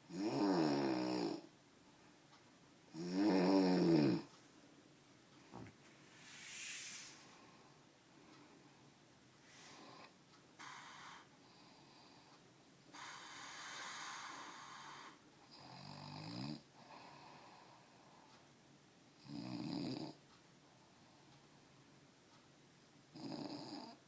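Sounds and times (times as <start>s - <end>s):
man snoring: 0.1s - 1.5s, 3.0s - 4.3s, 13.0s - 16.6s, 23.2s - 24.0s.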